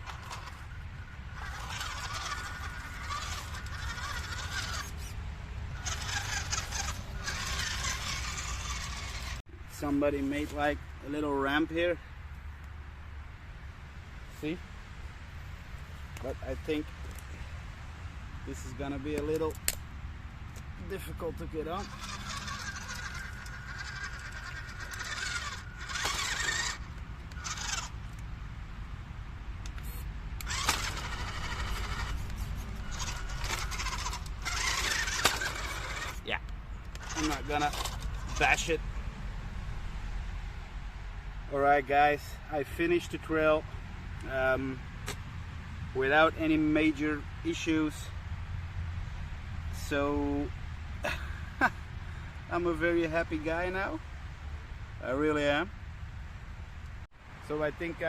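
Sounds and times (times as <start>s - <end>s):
small electric motor whining: 0.0s - 5.2s, 5.8s - 9.4s, 21.0s - 28.2s, 29.7s - 36.3s, 36.9s - 38.7s.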